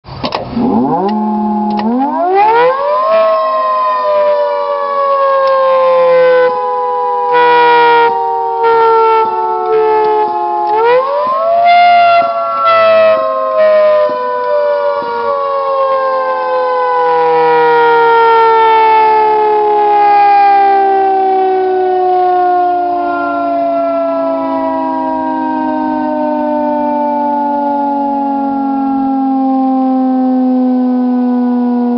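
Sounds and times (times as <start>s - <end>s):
short siren pulses: 0.5s - 31.9s
three-tone warning siren: 0.5s - 31.9s.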